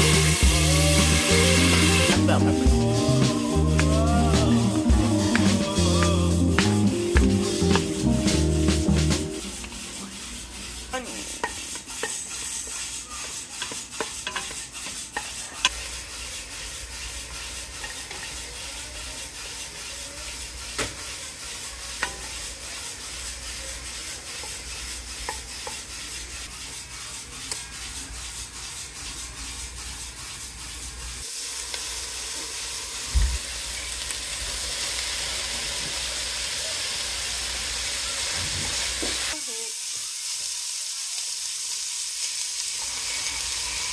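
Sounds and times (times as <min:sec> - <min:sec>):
food sizzling in pan: 0:00.0 - 0:27.8, 0:28.6 - 0:43.9
spoon scraping pan: 0:09.5 - 0:15.9, 0:16.9 - 0:18.5.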